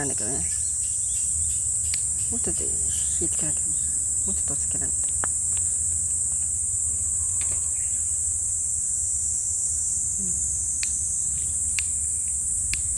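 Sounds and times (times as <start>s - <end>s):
insects chirring: 0.0s - 12.9s
sharp clicks: 10.8s - 11.0s, 11.7s - 12.9s.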